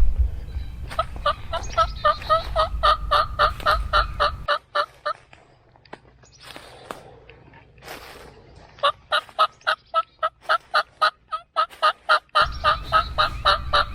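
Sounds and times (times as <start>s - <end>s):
turkey yelps: 0.9s - 4.9s, 8.8s - 13.9s.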